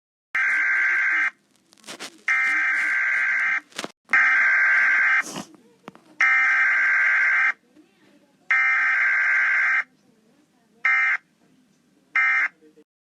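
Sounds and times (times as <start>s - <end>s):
harsh distorted siren blasts: 0.4s - 1.4s, 2.3s - 3.6s.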